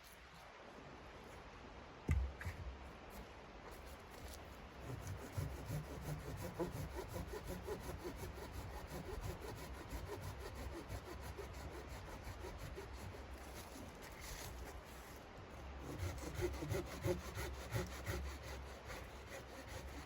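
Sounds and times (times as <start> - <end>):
hand saw cutting wood: 4.8 - 14.9, 15.8 - 20.0.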